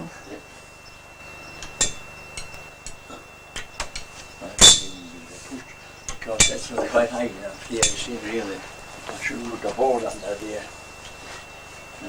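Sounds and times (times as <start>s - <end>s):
metallic knocks and clinks: 1.6s - 5.2s, 6.1s - 6.9s, 7.8s - 8.2s.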